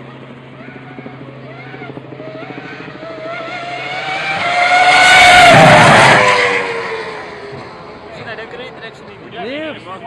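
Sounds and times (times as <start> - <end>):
racing car passing at speed: 0.6 - 8.5.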